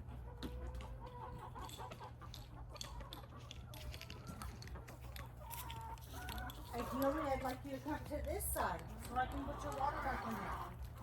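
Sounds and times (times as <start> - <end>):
hens clucking: 0.0 - 11.0.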